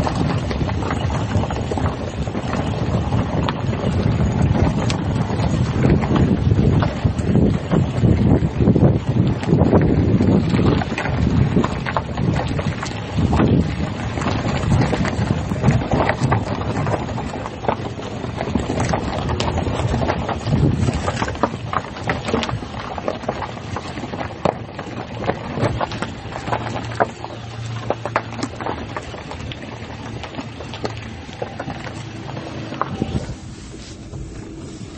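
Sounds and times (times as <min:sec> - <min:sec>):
low engine hum: 0:00.0 - 0:34.9
tyres rumbling on dirt road: 0:00.0 - 0:34.9.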